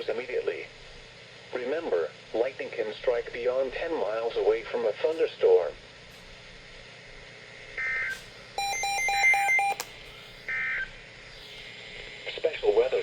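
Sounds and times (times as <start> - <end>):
quick electronic beeps: 8.6 - 9.8.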